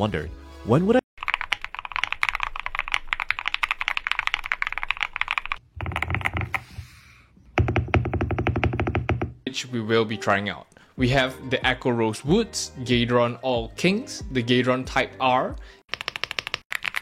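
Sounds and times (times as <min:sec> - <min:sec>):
mechanical keyboard typing: 0:01.2 - 0:06.6, 0:15.9 - 0:17.0.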